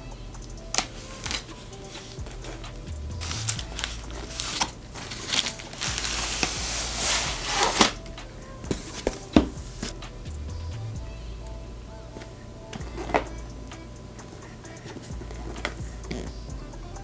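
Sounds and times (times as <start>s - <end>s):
quiet background music: 0.0s - 17.0s
packaging rustling: 0.7s - 10.0s.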